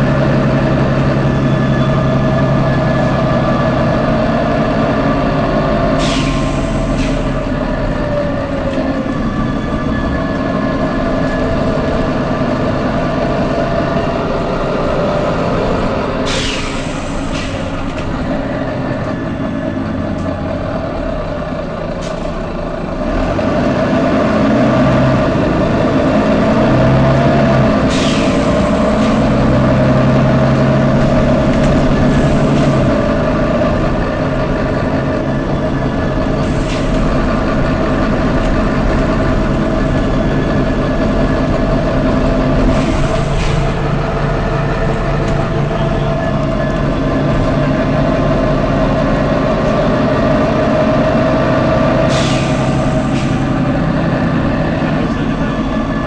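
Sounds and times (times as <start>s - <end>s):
bus engine running: 0.0s - 56.0s
compressed air hisses: 6.0s - 7.3s, 16.3s - 17.6s, 52.1s - 53.4s.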